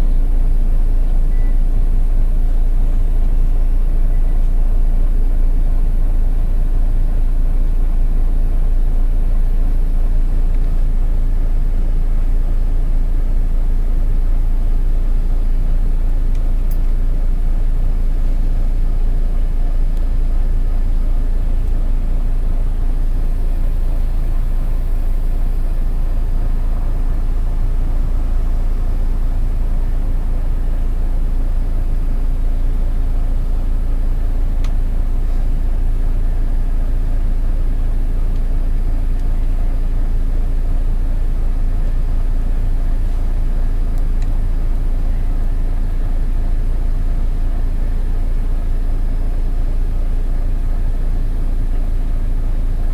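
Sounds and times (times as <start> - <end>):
bus diesel engine rumble: 0.0 - 52.9.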